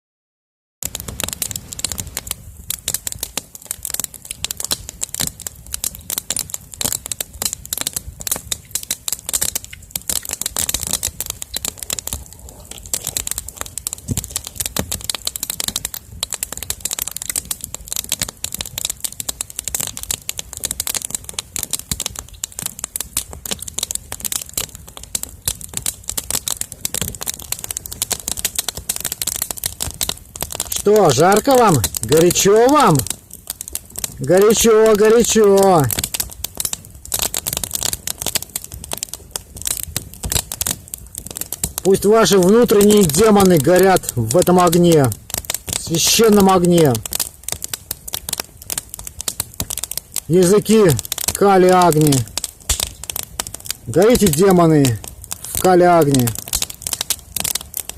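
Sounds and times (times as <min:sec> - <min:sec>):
bonfire crackling: 0:00.8 - 0:57.9.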